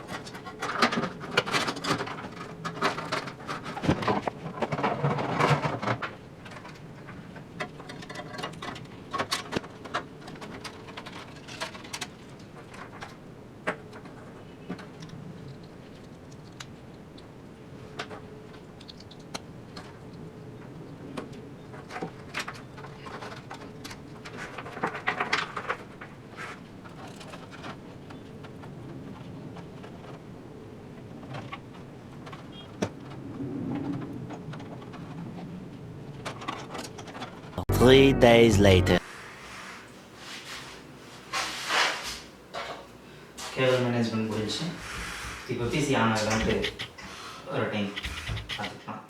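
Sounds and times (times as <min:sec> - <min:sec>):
computer parts clicking and rattling: 0:07.6 - 0:13.1.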